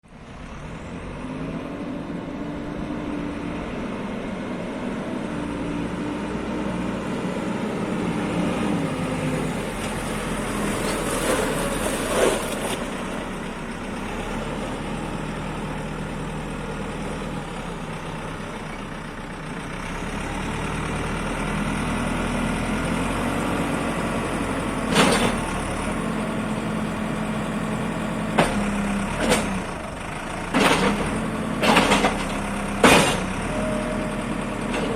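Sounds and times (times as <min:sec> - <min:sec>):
diesel engine revving: 0:00.1 - 0:34.9
sharp metallic knocks: 0:32.8 - 0:33.3.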